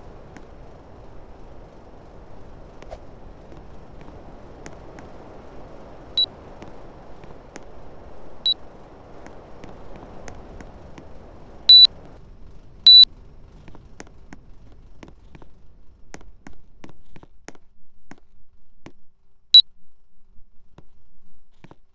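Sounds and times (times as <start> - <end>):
air conditioner beeps: 11.7 - 11.9, 12.9 - 13.1.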